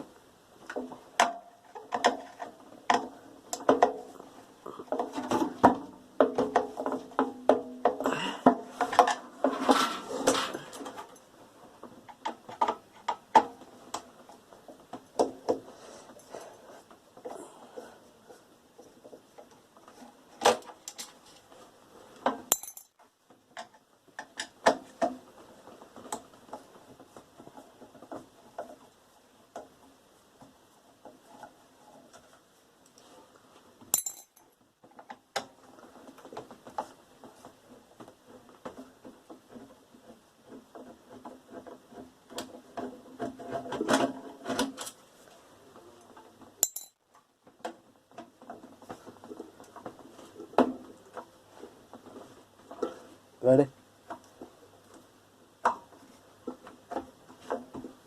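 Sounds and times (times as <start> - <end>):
metal parts clinking and knocking: 22.4 - 23.0, 34.0 - 34.4, 46.6 - 47.0
metal parts rattling: 22.5 - 22.9, 34.0 - 34.4.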